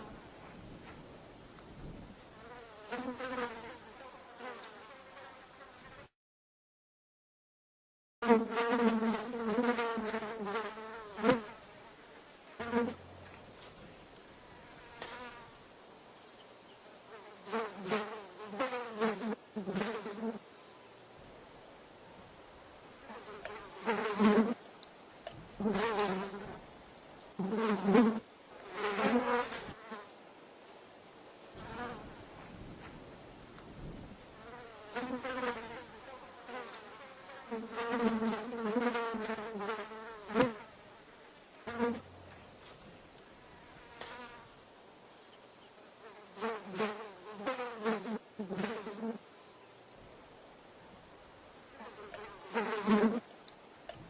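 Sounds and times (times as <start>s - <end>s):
fly buzzing: 2.3s - 6.2s, 8.2s - 13.4s, 14.2s - 15.6s, 16.6s - 20.4s, 23.0s - 24.6s, 25.6s - 26.6s, 27.4s - 30.1s, 31.6s - 32.1s, 34.4s - 42.6s, 43.3s - 44.6s, 45.6s - 49.3s, 51.7s - 53.3s.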